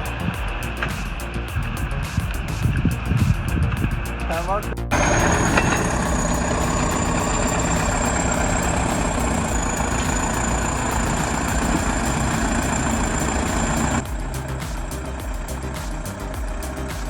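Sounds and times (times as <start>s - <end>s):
high steady whine: 0.0s - 17.0s
diesel engine running under load: 4.9s - 14.6s.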